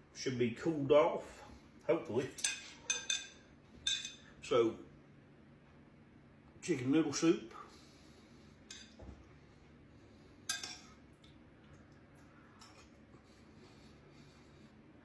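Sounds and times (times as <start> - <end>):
spoon clinking against bowl: 10.5 - 10.9.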